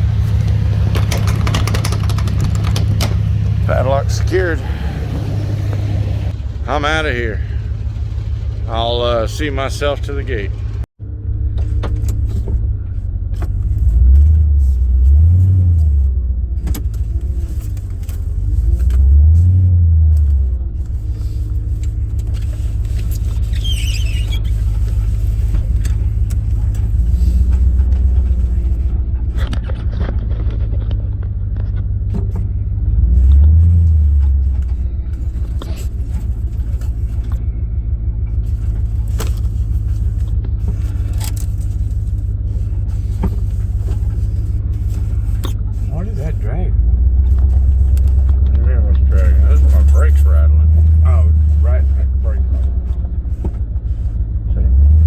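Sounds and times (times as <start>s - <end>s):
clicks and rattles: 0.0s - 3.9s, 38.3s - 45.9s
vehicle engine driving off: 0.0s - 55.0s.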